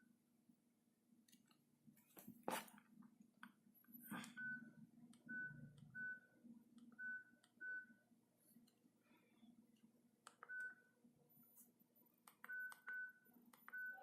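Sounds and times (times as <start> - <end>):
phone key beeps: 12.4 - 14.0.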